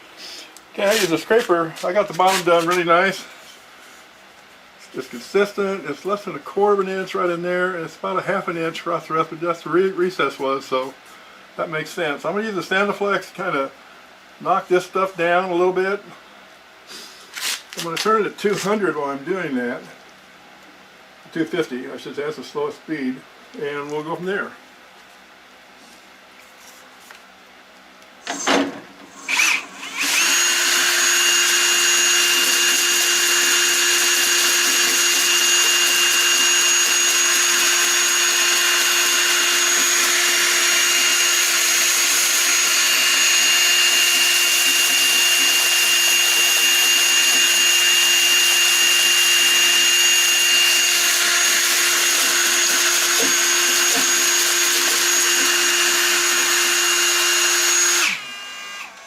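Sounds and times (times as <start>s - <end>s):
electric motor whining: 29.2s - 59.0s.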